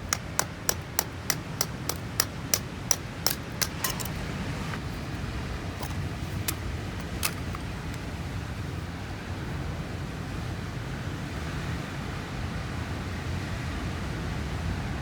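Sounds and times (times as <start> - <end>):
sharp clicks: 0.0 - 4.3
wind and surf rumble: 0.0 - 15.0.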